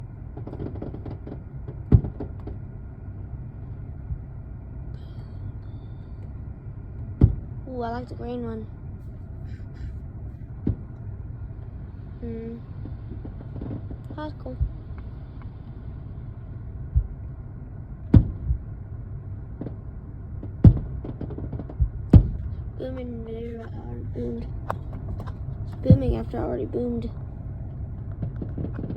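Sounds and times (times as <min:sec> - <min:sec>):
low rumble: 0:00.0 - 0:28.9
fireworks boom: 0:00.3 - 0:02.6, 0:12.7 - 0:15.2, 0:18.1 - 0:18.7, 0:19.5 - 0:23.0, 0:24.5 - 0:26.6, 0:28.0 - 0:28.9
fireworks pops: 0:00.4 - 0:02.6, 0:12.8 - 0:15.1, 0:20.4 - 0:23.8, 0:28.1 - 0:28.9
fireworks crackling: 0:12.6 - 0:14.9, 0:28.2 - 0:28.9.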